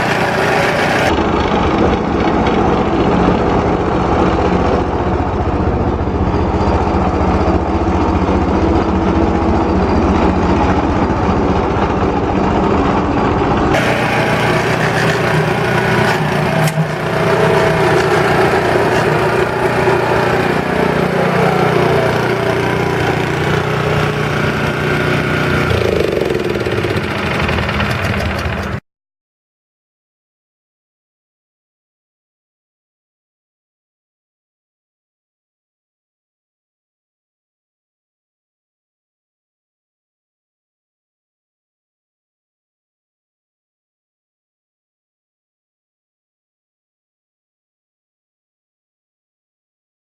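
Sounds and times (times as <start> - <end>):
lawn scarifier engine running: 0.0 - 28.8.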